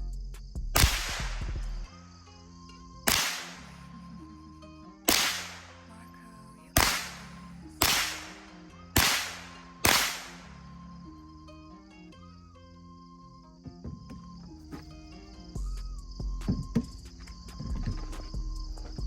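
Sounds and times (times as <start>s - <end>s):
pistol shots echoing: 0.8s - 1.6s, 3.1s - 3.8s, 5.1s - 5.9s, 6.8s - 10.6s.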